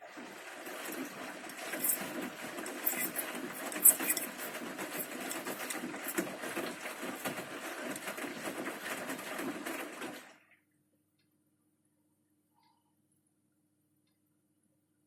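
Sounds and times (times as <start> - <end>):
washing machine drum churning: 0.0 - 10.4.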